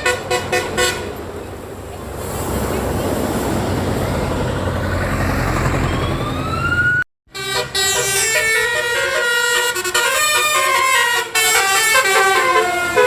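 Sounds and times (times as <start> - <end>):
multi-tone bus horn melody: 0.0 - 1.3, 7.3 - 13.0
heavy vehicle rumbling past: 0.0 - 13.0.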